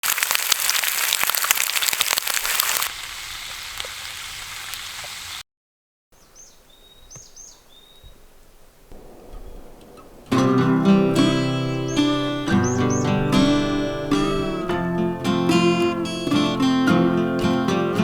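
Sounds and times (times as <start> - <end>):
crackling hiss: 0.0 - 5.4, 7.1 - 18.0
bird chirps and whistles: 11.7 - 14.7.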